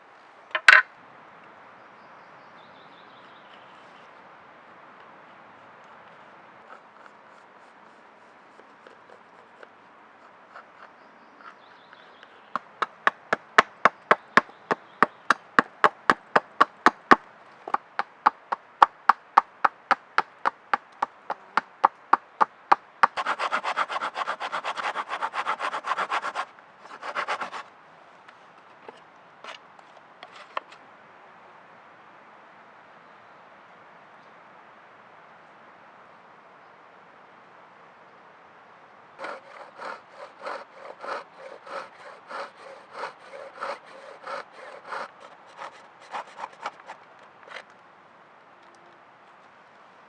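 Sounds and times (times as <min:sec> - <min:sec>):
hand tool scraping hardwood: 0:06.7 - 0:18.4, 0:23.0 - 0:27.7, 0:30.2 - 0:30.7, 0:39.2 - 0:47.6
fast continuous rubbing: 0:22.7 - 0:27.6, 0:39.2 - 0:47.6.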